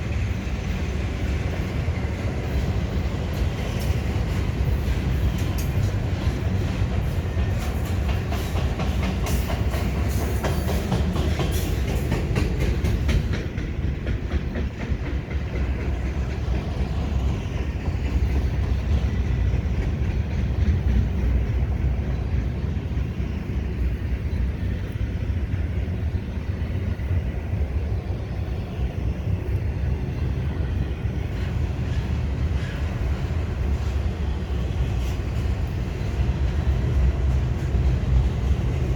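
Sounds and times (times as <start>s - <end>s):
freight train wheels clicking: 0.0s - 38.9s
train rumble: 0.0s - 38.9s.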